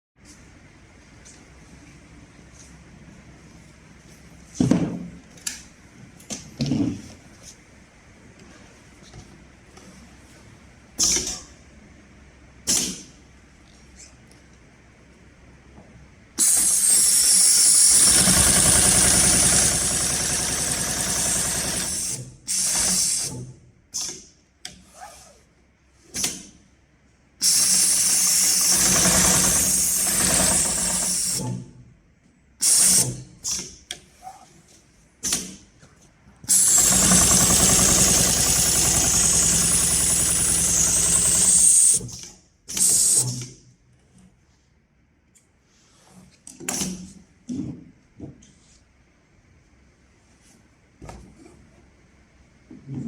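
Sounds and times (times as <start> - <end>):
sewing machine stitching: 36.5 - 42.0.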